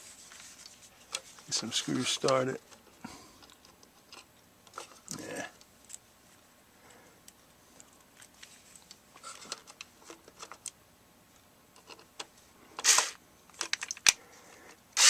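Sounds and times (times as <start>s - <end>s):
cordless drill driving a screw: 12.8s - 13.2s
screws and plastic parts rattling: 12.8s - 14.2s.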